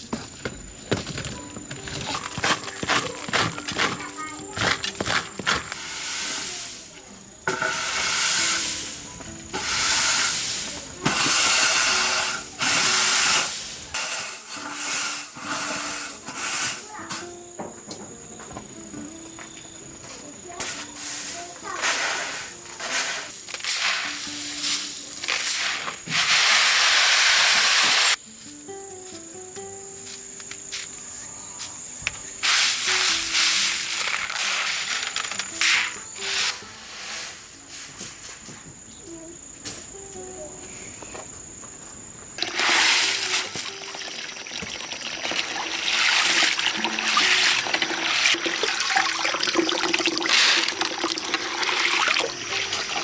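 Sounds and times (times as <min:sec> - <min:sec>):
water pouring and splashing: 0:01.0 - 0:14.7, 0:32.4 - 0:36.5, 0:42.4 - 0:53.0
loud steady hiss: 0:05.5 - 0:17.3, 0:20.6 - 0:31.2, 0:31.8 - 0:38.9, 0:39.9 - 0:53.0.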